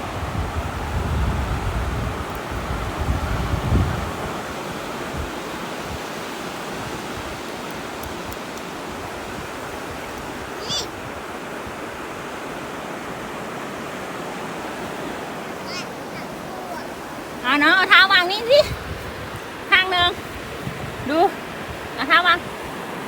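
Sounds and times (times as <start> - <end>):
sea waves washing onto beach: 0.0 - 23.0.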